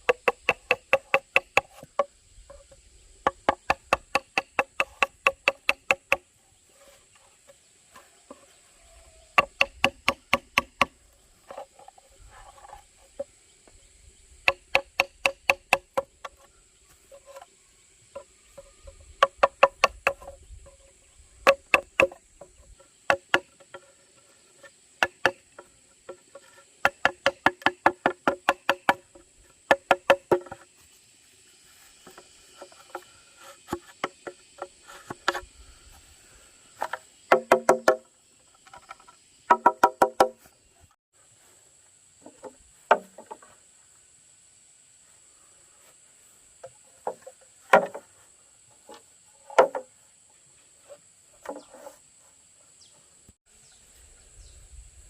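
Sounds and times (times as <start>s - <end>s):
hollow bamboo knocks: 0.0s - 6.3s, 9.4s - 13.3s, 14.4s - 16.5s, 18.1s - 20.8s, 21.4s - 30.8s, 32.0s - 35.5s, 36.8s - 40.5s, 42.2s - 43.6s, 46.6s - 48.2s, 48.8s - 50.0s.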